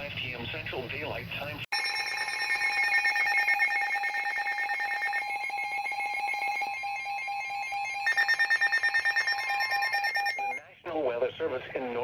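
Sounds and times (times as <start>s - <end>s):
high pulsing alarm tones: 1.7s - 10.6s.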